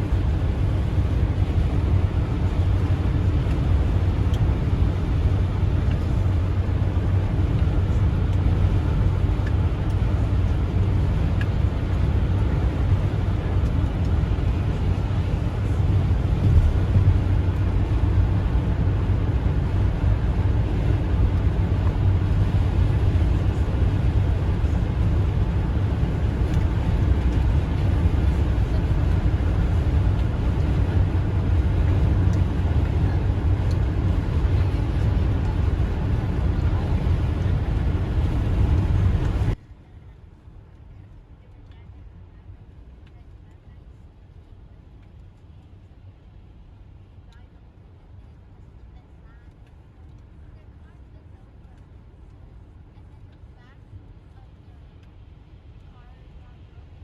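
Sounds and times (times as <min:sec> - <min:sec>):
car driving at highway speed: 0:00.0 - 0:39.6.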